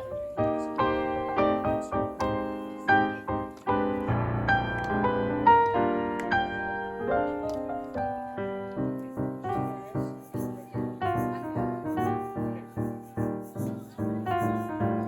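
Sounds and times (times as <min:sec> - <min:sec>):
piano playing jazz chords: 0:00.0 - 0:15.0.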